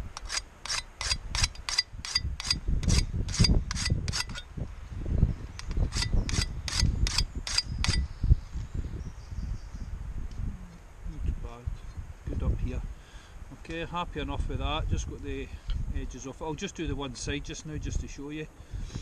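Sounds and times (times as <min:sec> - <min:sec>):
sharpening stone scraping steel: 0:00.1 - 0:04.5, 0:05.6 - 0:08.0.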